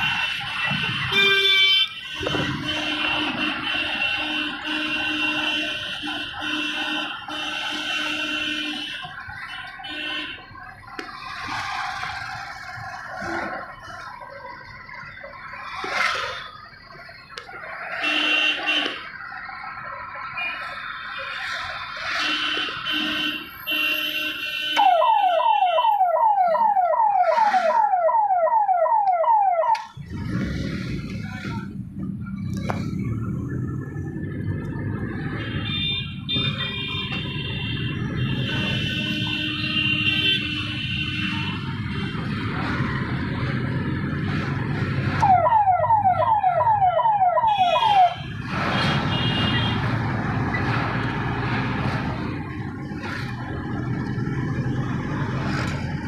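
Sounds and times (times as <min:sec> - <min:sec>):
road traffic: 0:00.0 - 0:56.0
siren-like falling wail: 0:24.8 - 0:29.9, 0:45.2 - 0:48.2.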